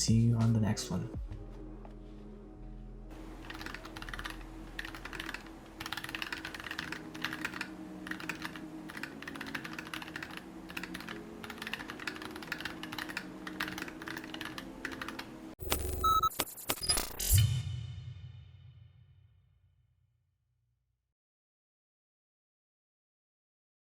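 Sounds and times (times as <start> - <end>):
mechanical keyboard typing: 3.3 - 16.8.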